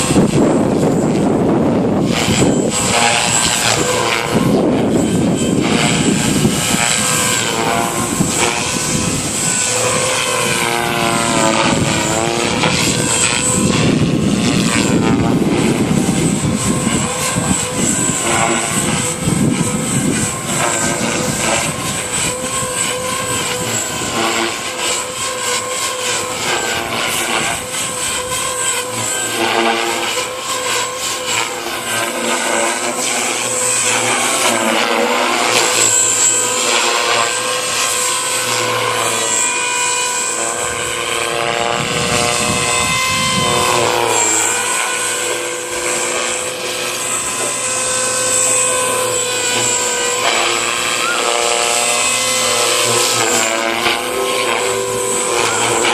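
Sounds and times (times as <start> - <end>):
model helicopter motor and rotor whine: 0.0 - 55.9
wind buffeting microphone: 0.0 - 55.9.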